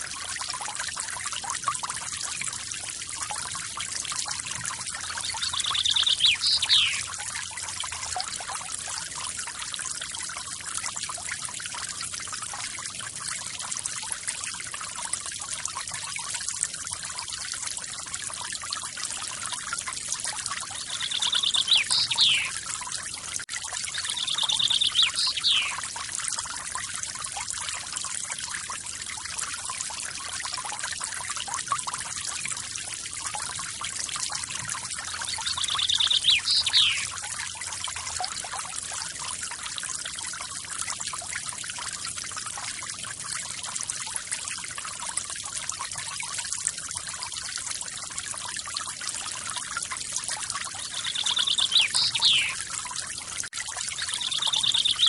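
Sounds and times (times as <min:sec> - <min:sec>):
bird trilling: 0:05.4 - 0:07.1, 0:20.9 - 0:22.5, 0:24.1 - 0:25.8, 0:35.4 - 0:37.1, 0:50.9 - 0:52.6, 0:54.1 - 0:55.0.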